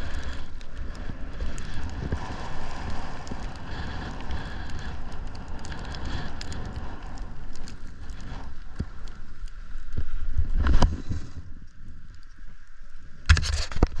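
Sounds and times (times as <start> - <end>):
snowboard scrape: 0.0 - 7.2, 10.5 - 11.5
snowboard hissing over snow: 0.0 - 9.3, 10.6 - 11.5
wind rumbling on microphone: 0.0 - 14.0.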